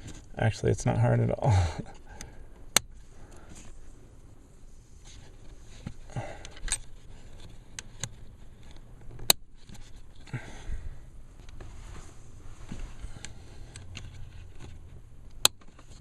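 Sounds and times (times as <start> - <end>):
light scraping and handling: 1.9 - 16.0.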